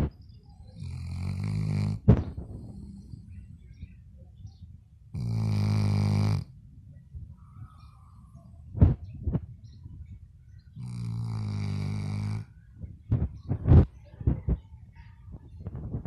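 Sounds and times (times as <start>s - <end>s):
dog snoring: 0.8s - 3.0s, 5.2s - 6.5s, 10.8s - 12.5s.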